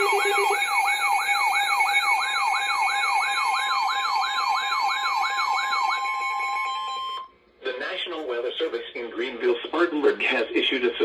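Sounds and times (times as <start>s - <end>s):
steady tone: 0.0s - 0.8s
electronic siren falling sweep: 0.0s - 7.3s.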